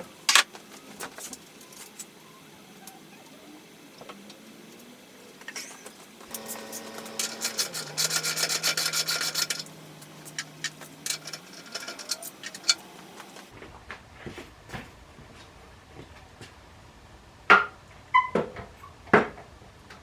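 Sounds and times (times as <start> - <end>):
faint steady hum: 0.0 - 13.5
hand tools rasping and clicking: 6.3 - 13.5.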